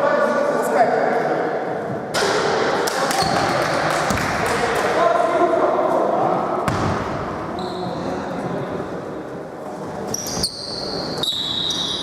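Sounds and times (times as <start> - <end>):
gym background noise: 0.0 - 12.0
basketball bouncing on court: 6.6 - 7.4.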